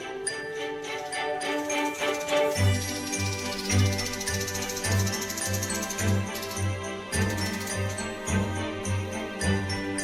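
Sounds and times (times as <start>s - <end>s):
christmas-style music with jingle bells: 0.0s - 10.0s.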